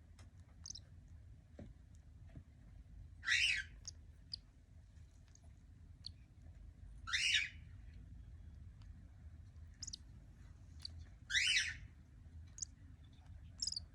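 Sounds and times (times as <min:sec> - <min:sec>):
cockatiel squawking: 0:03.2 - 0:03.8.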